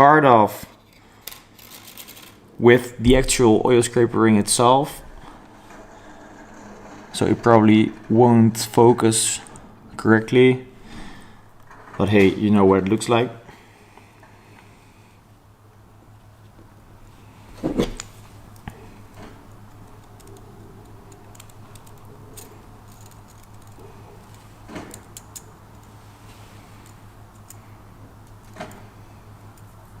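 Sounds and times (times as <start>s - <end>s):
small metallic clicks: 18.6s - 26.0s.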